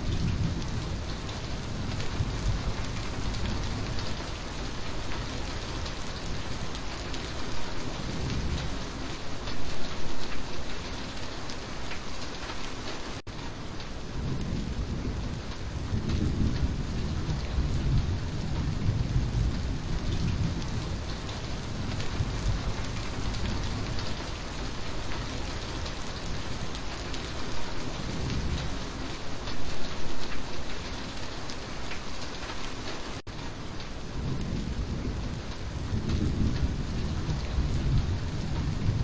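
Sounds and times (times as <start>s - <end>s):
thunder rumble: 0.0s - 9.2s, 14.1s - 29.2s, 34.0s - 39.0s
heavy rain falling: 0.0s - 39.0s.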